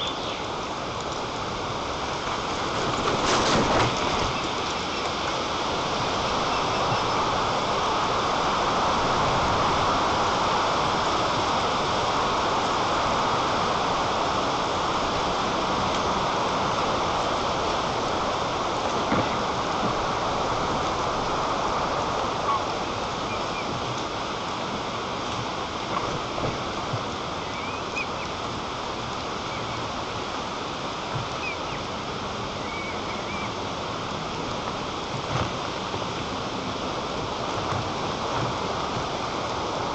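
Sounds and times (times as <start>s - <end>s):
faint high bird chirps: 0.0s - 0.5s, 32.6s - 33.5s.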